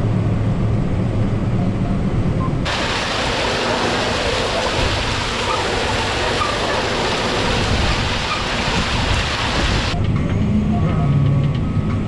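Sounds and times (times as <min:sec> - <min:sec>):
wind buffeting microphone: 0:03.9 - 0:10.2.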